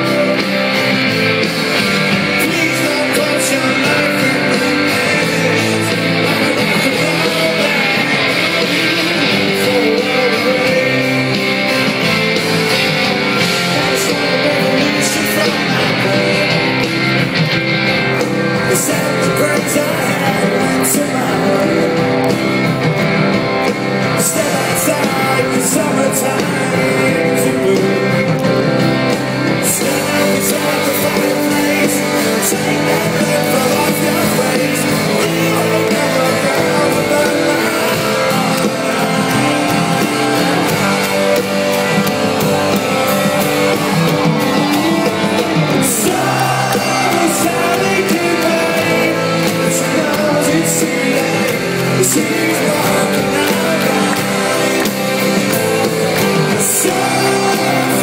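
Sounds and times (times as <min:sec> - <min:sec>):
guitars: 0:00.0 - 0:58.0
live rock band playing: 0:00.0 - 0:58.0
person singing: 0:00.0 - 0:58.0.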